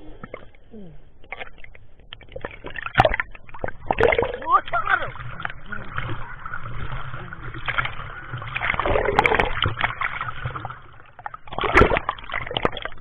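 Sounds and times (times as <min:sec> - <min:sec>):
water splashing and sloshing: 0:00.0 - 0:13.0.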